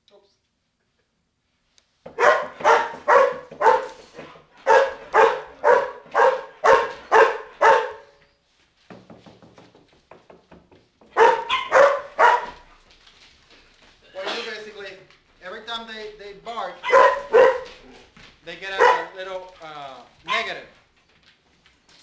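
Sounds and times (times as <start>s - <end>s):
small dog yapping: 2.2s - 4.0s, 4.7s - 8.1s, 11.2s - 12.7s, 16.8s - 18.0s, 20.2s - 20.5s.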